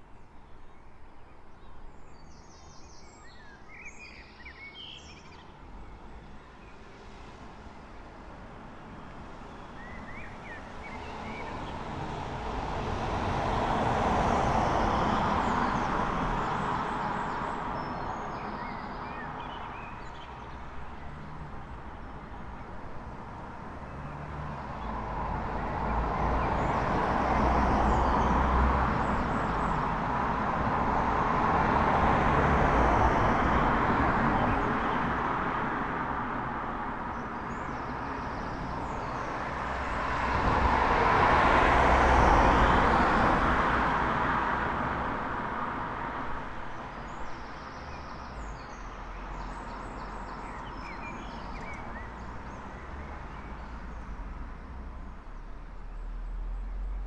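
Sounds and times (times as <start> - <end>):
cars passing: 4.8 - 57.0
small birds chirping: 46.8 - 54.2.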